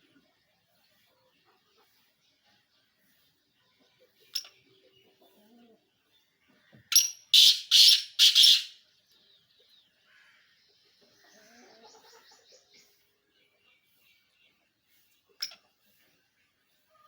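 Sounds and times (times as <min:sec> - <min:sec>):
pheasant calling: 0:06.9 - 0:08.8.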